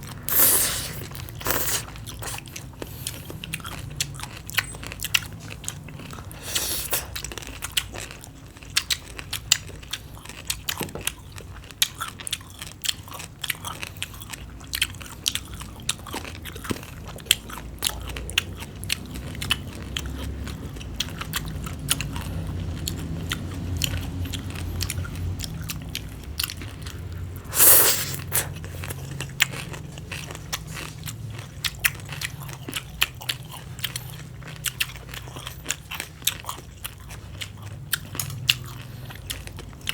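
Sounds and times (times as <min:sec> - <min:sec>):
crunchy chewing: 0:00.0 - 0:39.9
wet mouth clicks: 0:00.2 - 0:02.5, 0:06.4 - 0:07.2, 0:27.5 - 0:28.6.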